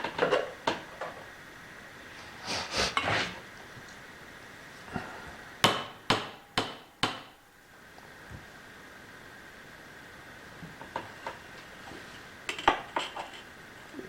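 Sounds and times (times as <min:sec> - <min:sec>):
hammer tapping metal: 0:05.6 - 0:07.4
parts being handled: 0:12.5 - 0:13.5.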